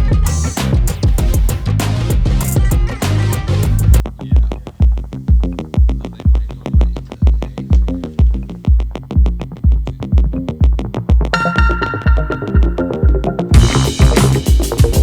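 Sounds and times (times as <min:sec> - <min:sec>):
heavy kick drum: 0:03.7 - 0:15.0
repeating bass line: 0:11.3 - 0:15.0
electronic dance music: 0:11.4 - 0:15.0.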